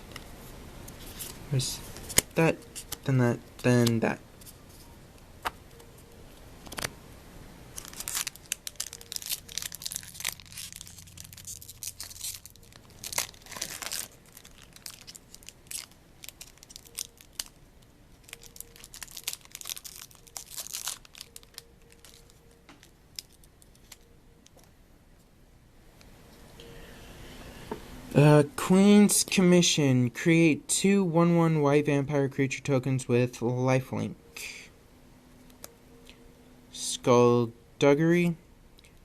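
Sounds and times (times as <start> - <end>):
foil wrapper tearing and crinkling: 7.7 - 17.6, 18.2 - 24.0.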